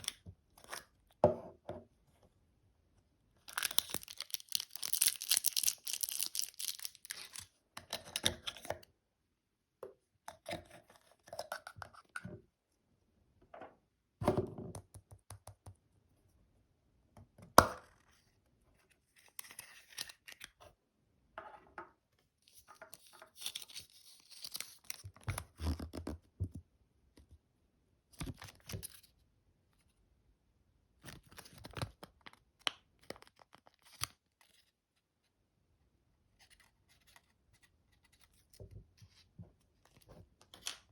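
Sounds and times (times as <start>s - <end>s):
foil wrapper tearing and crinkling: 3.5s - 7.4s.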